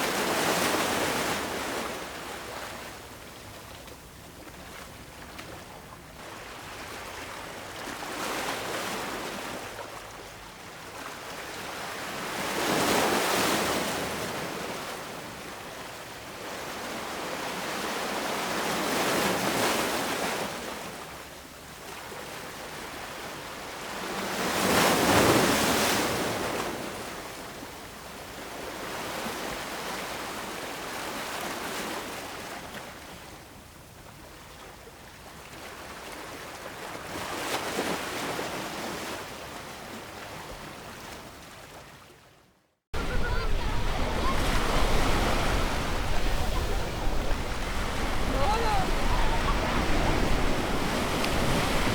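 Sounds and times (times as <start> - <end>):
waves breaking on shore: 6.2 - 20.7, 43.0 - 51.9.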